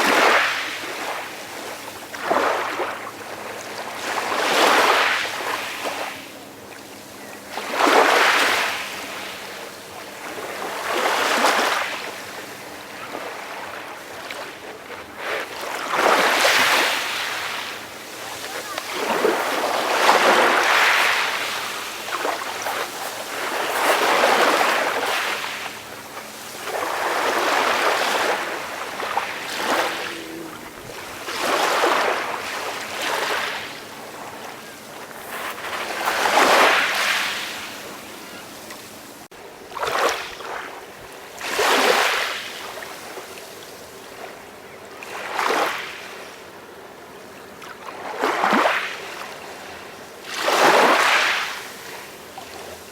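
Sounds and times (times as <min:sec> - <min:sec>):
sea waves washing onto shore: 0:15.2 - 0:40.6.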